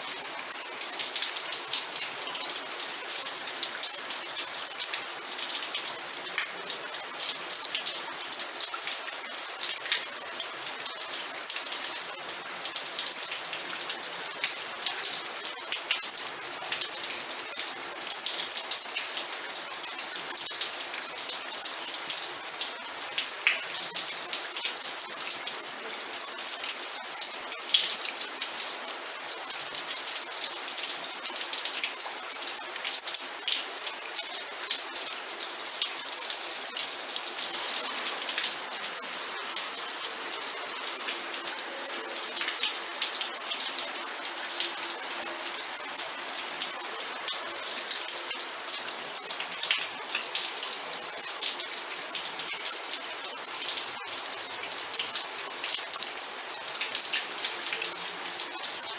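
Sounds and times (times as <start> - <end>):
steady rain pattering: 0.0 - 58.9.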